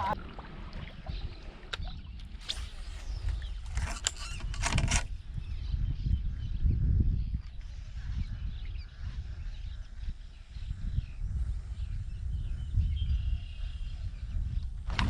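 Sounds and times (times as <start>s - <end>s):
wind rumble on microphone: 0.0s - 15.0s
gear knocks and clicks: 3.7s - 5.1s.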